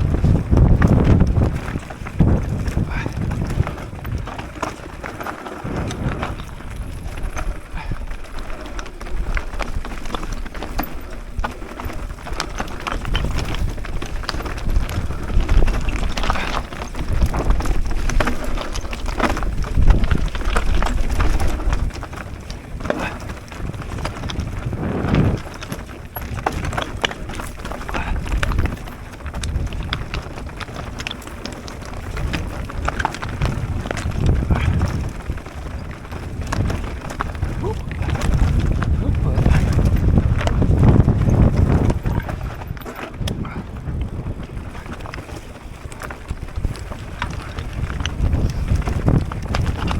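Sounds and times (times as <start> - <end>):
low rumbling bumps: 0.0 - 9.9, 23.0 - 27.1, 32.0 - 45.1
bike rattles and clicks: 0.0 - 49.9
bike tyres rolling over rough ground: 0.0 - 49.9.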